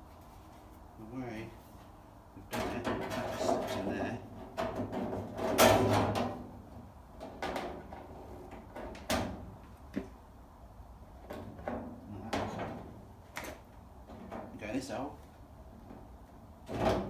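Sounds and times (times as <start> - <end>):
metal panel knocks and clunks: 2.5 - 9.5
metal panel scraping: 2.7 - 6.4.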